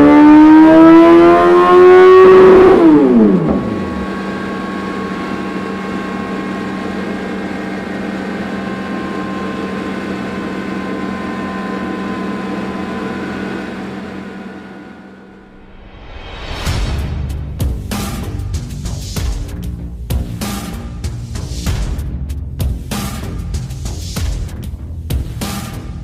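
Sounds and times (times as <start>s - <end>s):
motorcycle engine revving: 0.0s - 15.6s.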